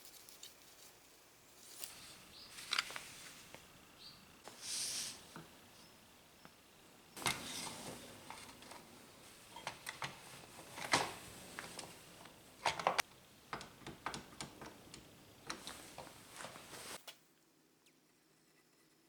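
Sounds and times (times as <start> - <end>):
wooden parts clicking and knocking: 7.2 - 16.9
tools scraping: 7.2 - 17.0.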